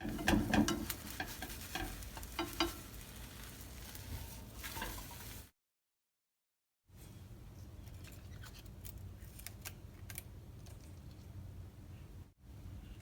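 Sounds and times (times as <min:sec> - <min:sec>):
food sizzling in a frying pan: 0:00.0 - 0:05.5.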